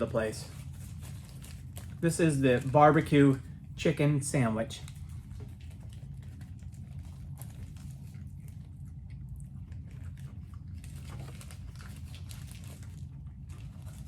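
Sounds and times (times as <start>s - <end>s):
steady low hum: 0.0s - 14.0s
small crunches: 4.7s - 14.0s.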